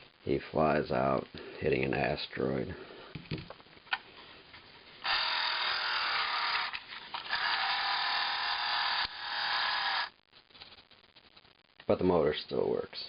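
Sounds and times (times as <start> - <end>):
toy motor whirring: 5.0 - 10.1.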